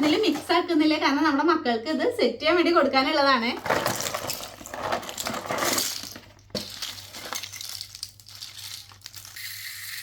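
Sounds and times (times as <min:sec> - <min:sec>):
plastic toys rustling and clinking: 0:00.0 - 0:00.6, 0:03.5 - 0:10.0.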